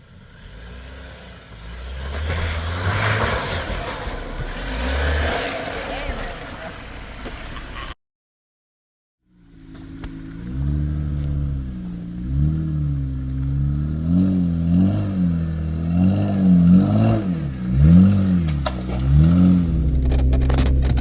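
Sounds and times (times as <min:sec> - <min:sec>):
off-road vehicle engine revving: 0:00.0 - 0:07.9, 0:09.5 - 0:21.0.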